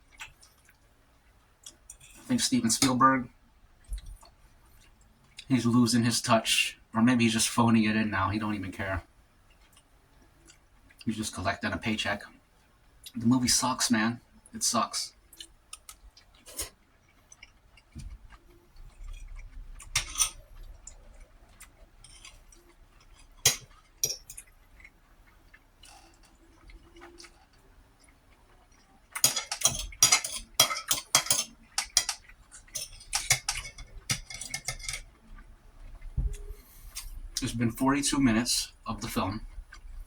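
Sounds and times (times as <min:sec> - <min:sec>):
utensil clicking against plate: 0:29.1 - 0:35.1.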